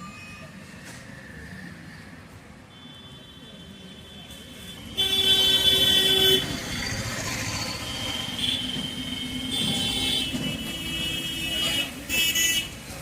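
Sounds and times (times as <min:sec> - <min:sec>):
traffic: 0:00.0 - 0:13.0
vehicle horn blast: 0:04.8 - 0:06.5.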